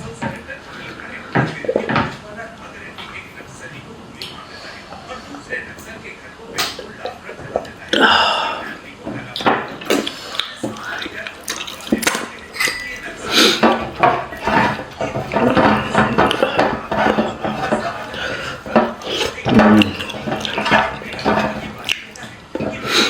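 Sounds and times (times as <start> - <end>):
chewing and mouth sounds: 6.6 - 23.0
dishes clinking: 6.6 - 23.0.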